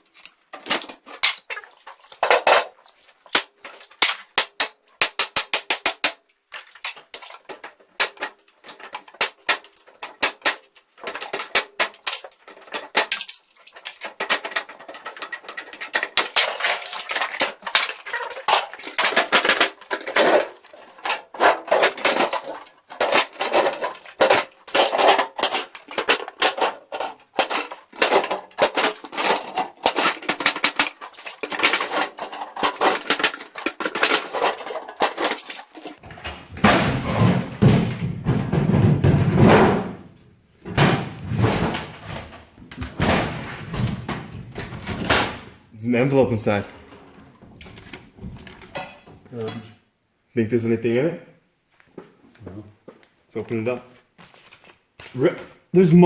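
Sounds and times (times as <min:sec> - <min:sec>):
metal clanking and clattering: 0:06.8 - 0:45.6, 0:46.4 - 0:49.7.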